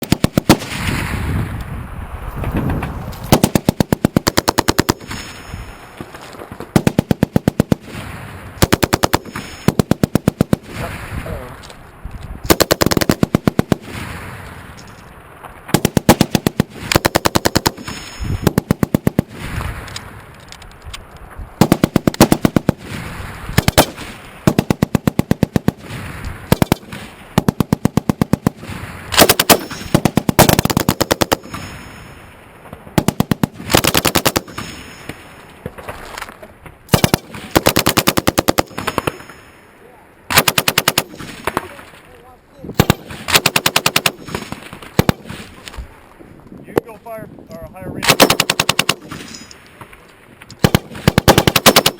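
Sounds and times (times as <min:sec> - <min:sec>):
machine gun firing bursts: 0:00.0 - 0:00.8, 0:03.3 - 0:05.2, 0:06.7 - 0:08.0, 0:08.6 - 0:10.8, 0:12.5 - 0:13.9, 0:15.7 - 0:19.3, 0:21.6 - 0:22.9, 0:23.6 - 0:25.9, 0:26.5 - 0:31.6, 0:33.0 - 0:34.6, 0:36.9 - 0:39.3, 0:40.3 - 0:41.6, 0:42.8 - 0:45.4, 0:48.0 - 0:49.4, 0:50.6 - 0:51.9
gunfire echo: 0:00.0 - 0:01.2, 0:03.2 - 0:05.5, 0:21.6 - 0:31.8, 0:33.0 - 0:34.8, 0:36.9 - 0:39.4, 0:40.3 - 0:41.7, 0:42.8 - 0:45.5, 0:48.0 - 0:49.4, 0:50.6 - 0:51.9.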